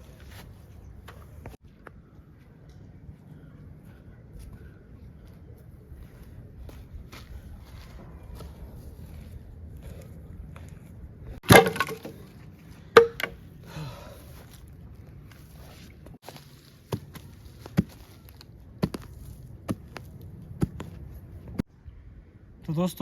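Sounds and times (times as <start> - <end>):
sticks rattling clatter: 11.4 - 12.2, 13.0 - 13.4.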